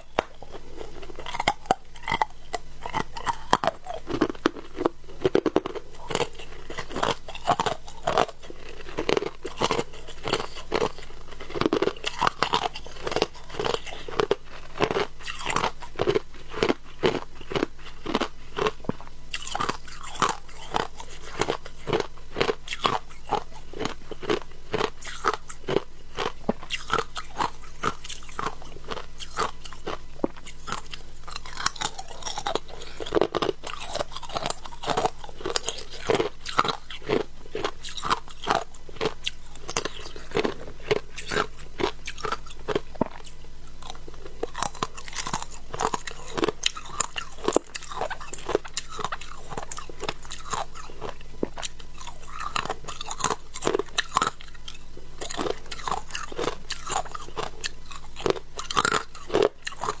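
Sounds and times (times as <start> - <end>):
person chewing shaved ice: 0.0 - 60.0.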